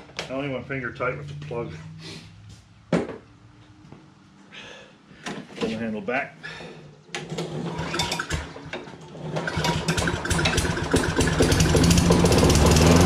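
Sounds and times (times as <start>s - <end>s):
lawnmower engine pull-started: 7.2s - 13.0s.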